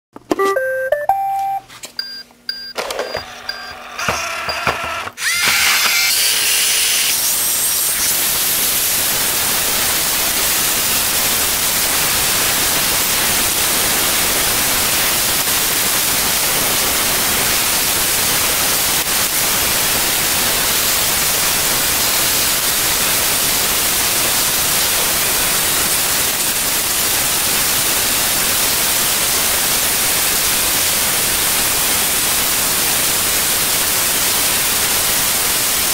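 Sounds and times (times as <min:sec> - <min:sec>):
robot vacuum beeps: 0:00.3 - 0:06.2
robot vacuum whirring: 0:02.8 - 0:08.2.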